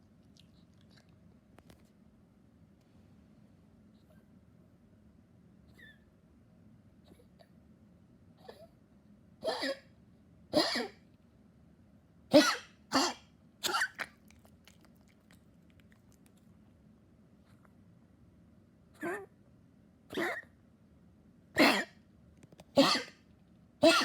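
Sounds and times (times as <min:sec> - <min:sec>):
dog coughing: 0:09.4 - 0:09.9, 0:10.5 - 0:11.0, 0:12.3 - 0:14.2, 0:21.6 - 0:22.0, 0:22.7 - 0:23.2, 0:23.8 - 0:24.0.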